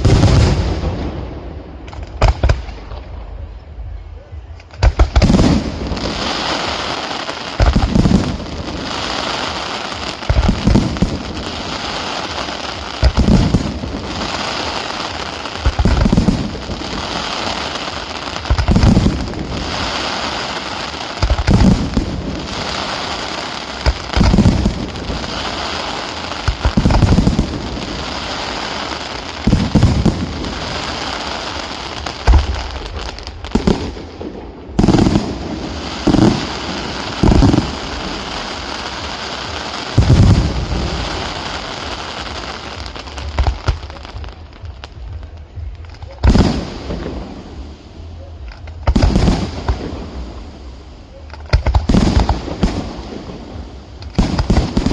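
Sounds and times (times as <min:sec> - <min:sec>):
heavy firework bangs: 0:00.0 - 0:03.0, 0:13.0 - 0:44.2
fireworks crackling: 0:00.0 - 0:54.9.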